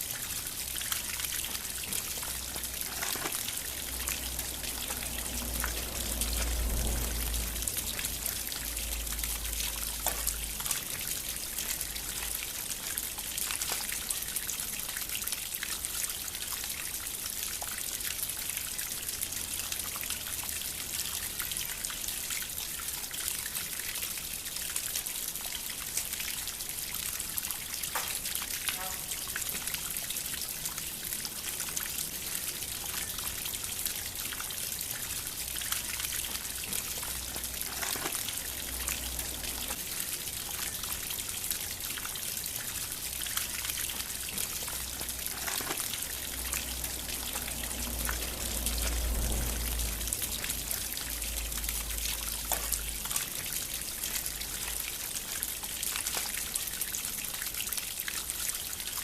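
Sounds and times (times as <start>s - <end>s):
water fountain splashing: 0.0s - 59.0s.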